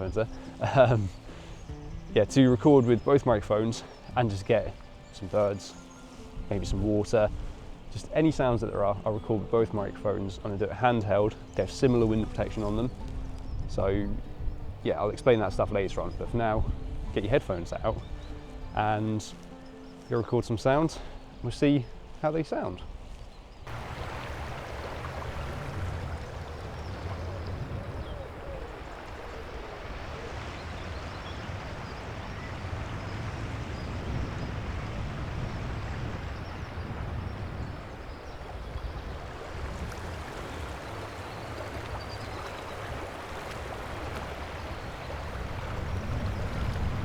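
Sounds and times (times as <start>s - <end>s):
small stream running: 0.0s - 47.0s
wind rumble on microphone: 12.0s - 18.6s, 22.9s - 47.0s.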